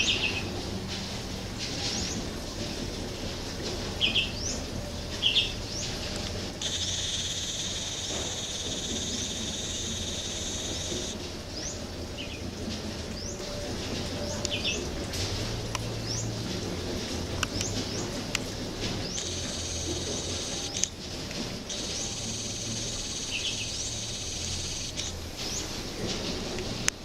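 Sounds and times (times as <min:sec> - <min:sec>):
birds chirping: 0:04.0 - 0:12.4, 0:17.4 - 0:20.9, 0:21.6 - 0:25.8
steady high buzz: 0:05.6 - 0:12.0, 0:15.4 - 0:26.0.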